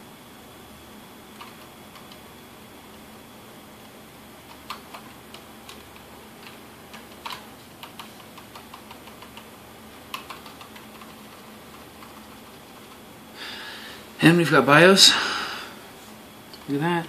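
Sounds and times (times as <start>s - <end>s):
computer keyboard key clicks: 4.5s - 9.5s, 10.1s - 12.2s.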